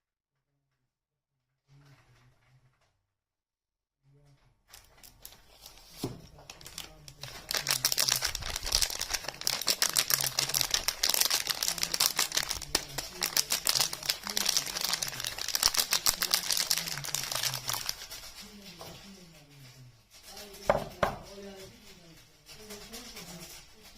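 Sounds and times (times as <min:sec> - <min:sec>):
wrapper crinkling and tearing: 0:04.7 - 0:18.7.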